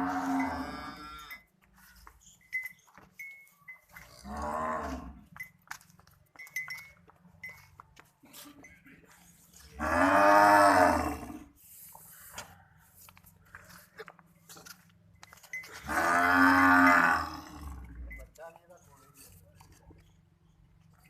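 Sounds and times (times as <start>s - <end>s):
cow mooing: 0.0s - 1.4s, 4.2s - 5.2s, 9.8s - 11.5s, 15.8s - 18.0s.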